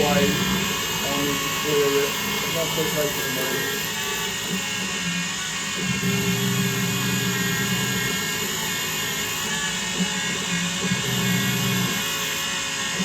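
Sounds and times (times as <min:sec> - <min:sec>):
lathe spindle whirring: 0:00.0 - 0:13.0.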